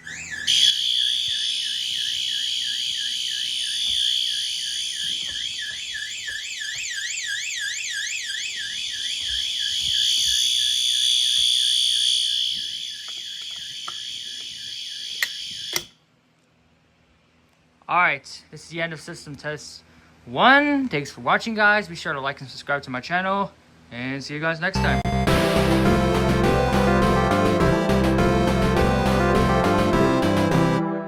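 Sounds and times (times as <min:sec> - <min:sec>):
alarm horn steady tone: 0:00.0 - 0:15.9
warbling alarm siren: 0:00.0 - 0:15.9.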